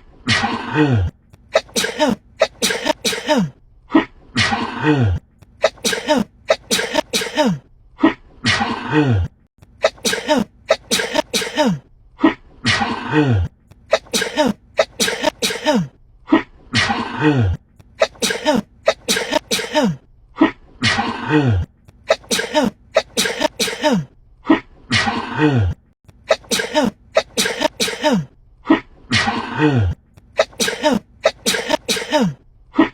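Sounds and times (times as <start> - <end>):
woman sneezing: 1.5 - 3.6, 5.6 - 7.6, 9.8 - 11.8, 13.9 - 15.9, 18.0 - 20.0, 22.1 - 24.1, 26.3 - 28.3, 30.4 - 32.4.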